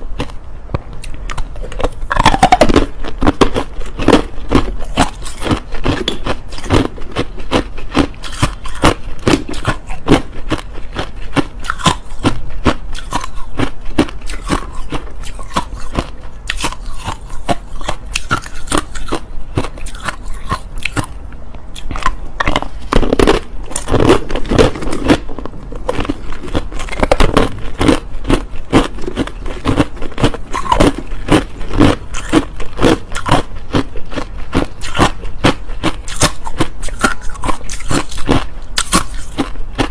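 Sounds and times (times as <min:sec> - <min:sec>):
chewing crushed ice: 0:01.0 - 0:39.9.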